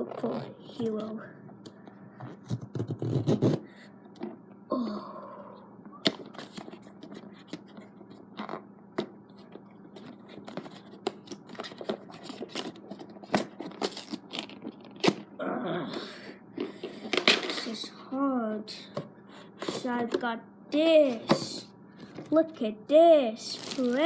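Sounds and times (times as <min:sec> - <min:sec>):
hands handling a camera box: 0:09.5 - 0:15.1.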